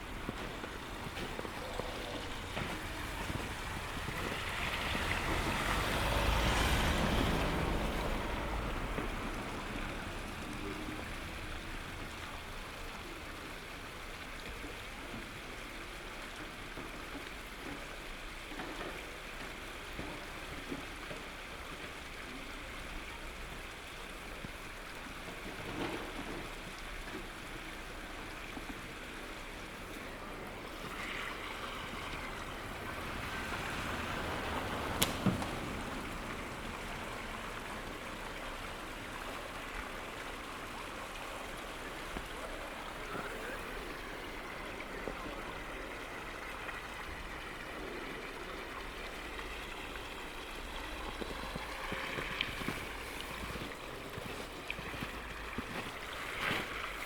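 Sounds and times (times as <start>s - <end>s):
wind buffeting microphone: 0.0s - 10.3s.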